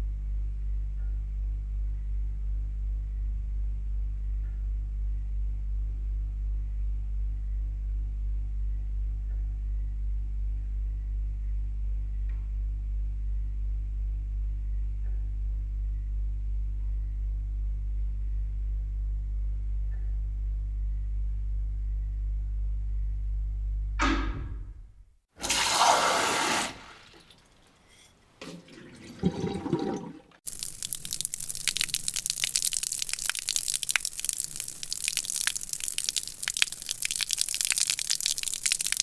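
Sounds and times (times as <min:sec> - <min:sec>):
water draining through pipe: 0:25.4 - 0:39.0.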